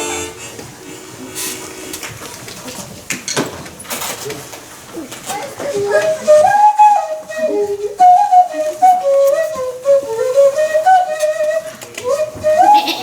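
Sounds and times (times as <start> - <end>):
flute-like wordless tune: 5.4 - 13.0.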